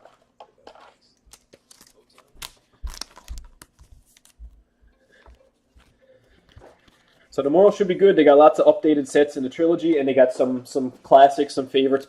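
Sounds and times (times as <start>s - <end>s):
foil wrapper crinkling: 1.3s - 7.3s.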